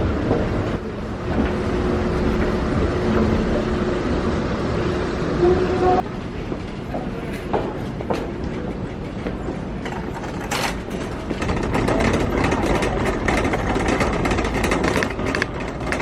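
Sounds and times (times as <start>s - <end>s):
vehicle ride rumble: 0.0s - 16.0s
rattling clicks: 9.8s - 16.0s.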